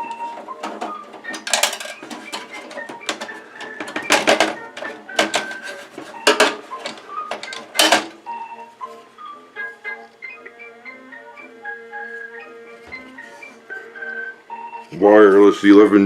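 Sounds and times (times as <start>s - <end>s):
metal computer parts clattering: 0.0s - 8.2s
light background music: 0.0s - 16.0s.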